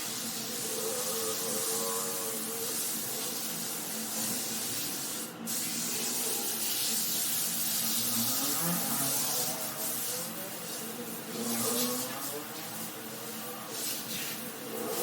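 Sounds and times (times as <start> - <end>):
brush scrubbing wet carpet: 5.6 - 15.0.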